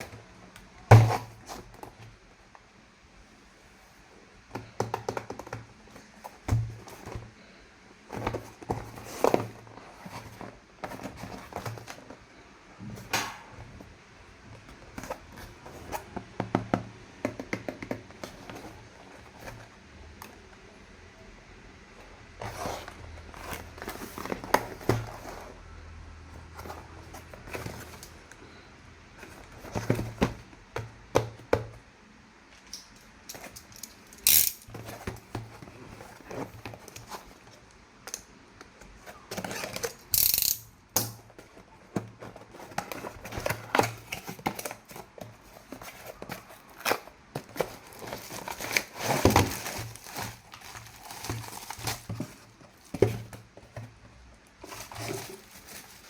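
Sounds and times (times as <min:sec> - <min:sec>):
plastic parts clicking and knocking: 0:32.6 - 0:35.6, 0:39.3 - 0:54.1
packaging crinkling and tearing: 0:42.6 - 0:52.9, 0:54.6 - 0:56.0.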